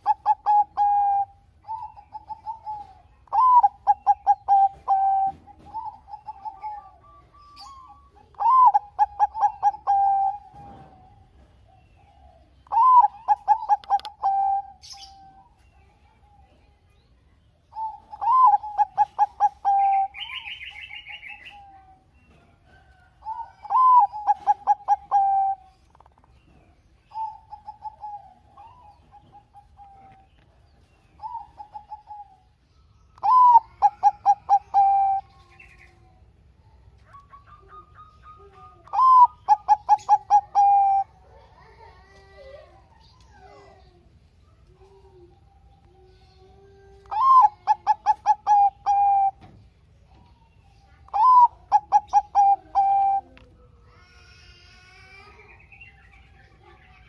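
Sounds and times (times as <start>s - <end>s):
dove cooing song: 0.0s - 16.8s, 17.7s - 55.2s
small bird chirping: 0.0s - 41.8s.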